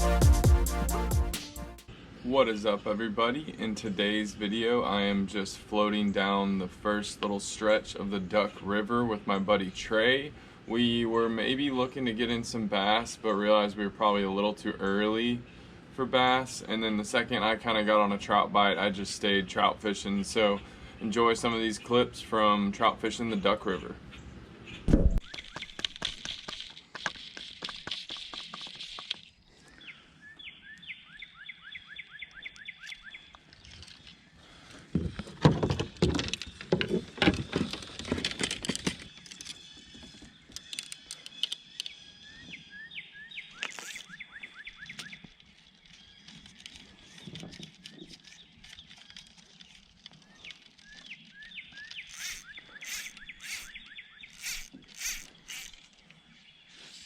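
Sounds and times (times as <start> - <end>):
birds chirping: 19.5 - 35.2, 35.8 - 57.0
river flowing: 54.4 - 55.8.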